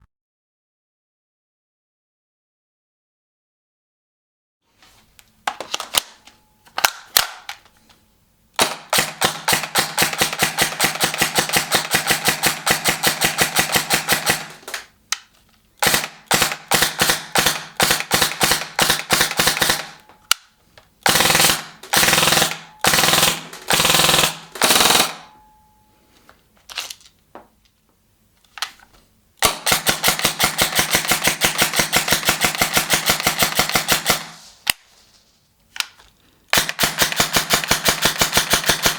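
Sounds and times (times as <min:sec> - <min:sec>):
airsoft gun firing: 0:08.6 - 0:15.0, 0:15.8 - 0:20.4, 0:21.0 - 0:25.4, 0:29.4 - 0:34.4, 0:36.6 - 0:38.9.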